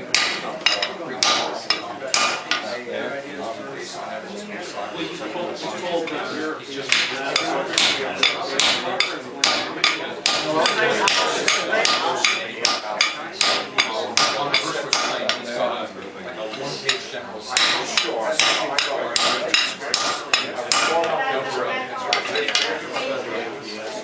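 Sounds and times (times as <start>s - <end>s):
hammer striking metal on anvil: 0.1s - 2.6s, 6.9s - 15.4s, 17.6s - 21.0s.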